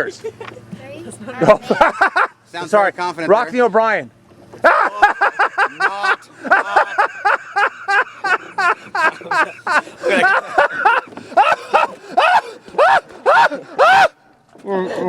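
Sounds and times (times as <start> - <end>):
person laughing hard: 1.4 - 2.4, 4.6 - 14.2.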